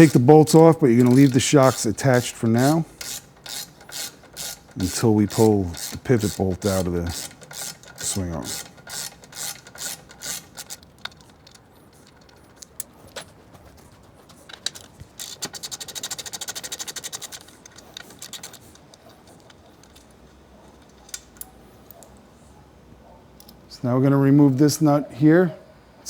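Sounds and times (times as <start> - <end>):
ratchet clicking rapidly: 0.0 - 13.0, 14.5 - 20.2
metal tools clinking: 0.0 - 22.3.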